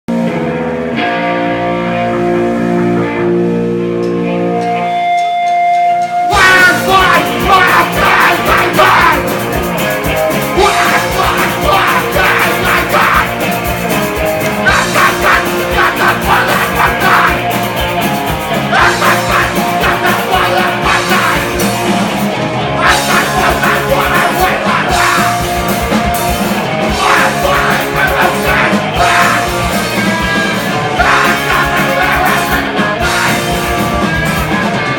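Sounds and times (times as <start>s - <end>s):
punk rock band playing live: 0.1s - 34.9s
person singing: 6.3s - 9.8s, 10.4s - 13.7s, 14.4s - 22.0s, 22.8s - 26.2s, 26.8s - 34.5s.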